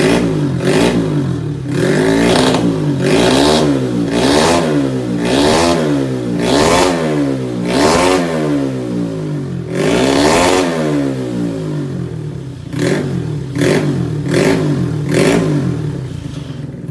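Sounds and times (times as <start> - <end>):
scooter engine revving: 0.0 - 16.9.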